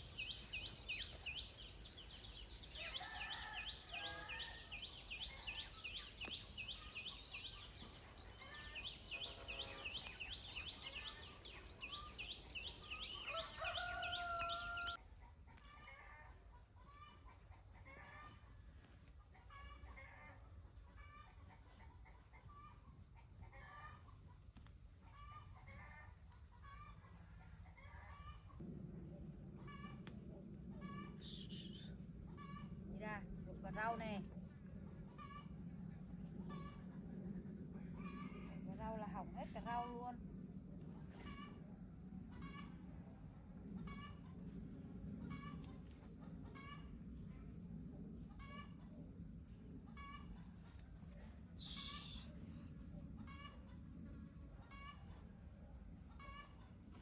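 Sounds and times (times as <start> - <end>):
rooster crowing: 2.5 - 5.7, 12.8 - 15.0.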